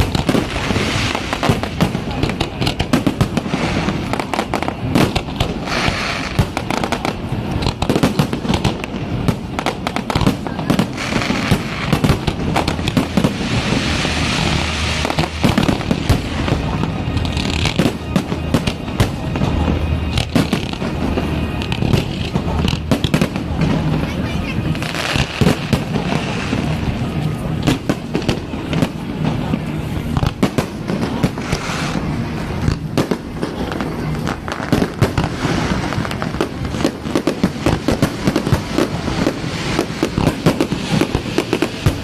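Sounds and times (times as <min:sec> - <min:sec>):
fireworks bangs and pops: 0:00.0 - 0:42.0
fireworks hissing crackle: 0:00.0 - 0:42.0.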